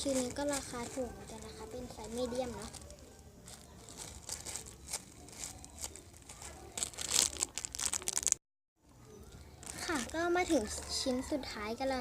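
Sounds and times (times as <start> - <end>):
plastic packaging crinkling: 0.0 - 8.4, 9.5 - 10.4.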